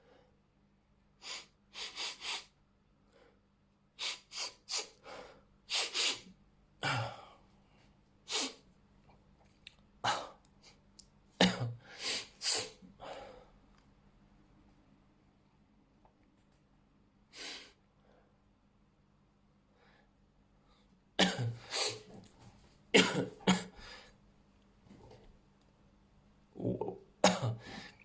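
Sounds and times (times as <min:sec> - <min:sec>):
person sneezing: 0:11.4 - 0:12.8, 0:21.2 - 0:22.2, 0:23.0 - 0:23.9.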